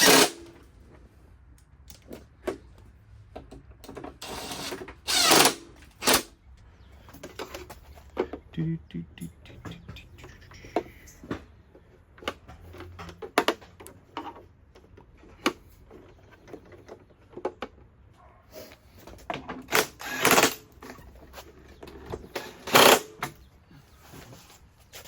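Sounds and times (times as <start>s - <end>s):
tools and metal parts clattering: 0.0s - 1.0s, 7.0s - 8.4s, 19.0s - 23.5s.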